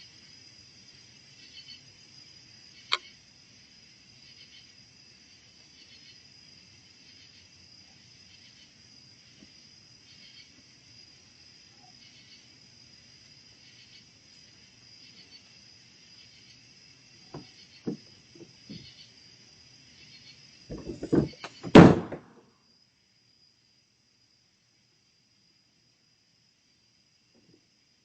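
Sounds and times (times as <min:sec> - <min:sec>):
crickets chirring: 0:00.0 - 0:28.0
garbage can crashing: 0:20.7 - 0:22.3
garbage can knocks and thuds: 0:20.7 - 0:22.3.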